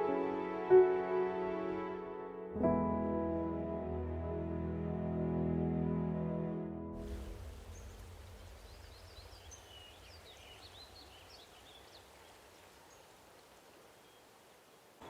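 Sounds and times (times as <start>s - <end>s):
low rumble: 6.9s - 11.1s
soft steady hiss: 7.0s - 15.0s
bird chirping: 7.1s - 13.2s.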